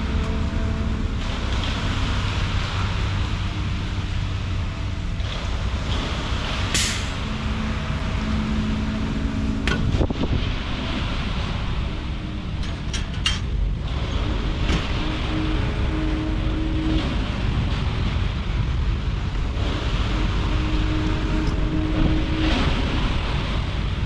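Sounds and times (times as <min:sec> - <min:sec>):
diesel truck engine running: 0:00.0 - 0:24.0.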